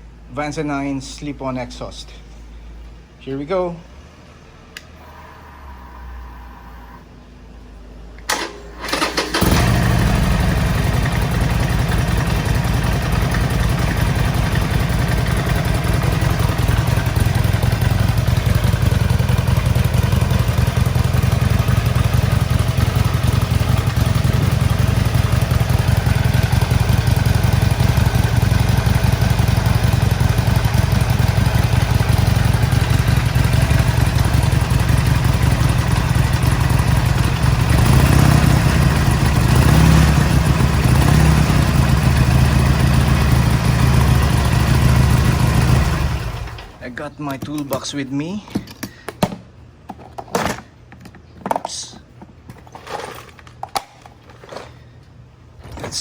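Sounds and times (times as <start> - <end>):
electric starter cranking: 8.2 - 12.1
motorcycle engine idling: 8.3 - 46.8.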